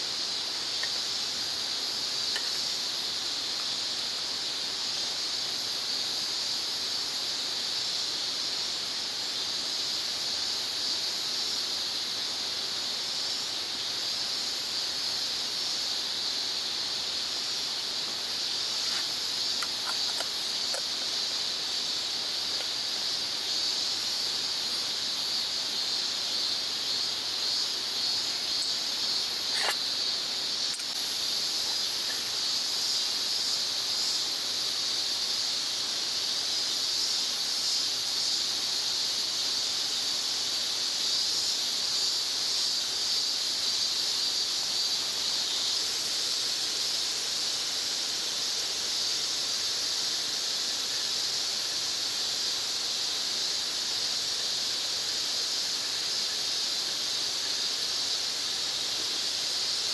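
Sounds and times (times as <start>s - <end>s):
high-pitched insect chorus: 0.0s - 59.9s.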